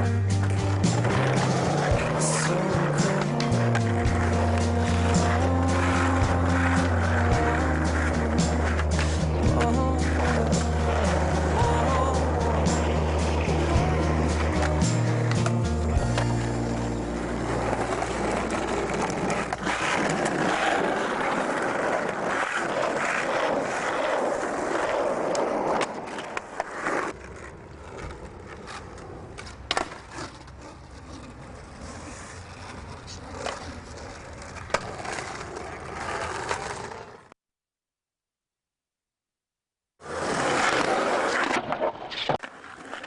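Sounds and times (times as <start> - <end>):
skateboard wheels rolling on pavement: 0.0 - 37.4, 40.0 - 43.0
skateboard popping and landing clacks: 17.7 - 31.6, 32.5 - 37.2.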